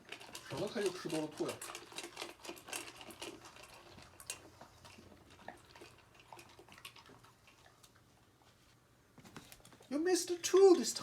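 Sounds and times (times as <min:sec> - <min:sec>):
pet eating kibble from bowl: 0:00.0 - 0:08.6.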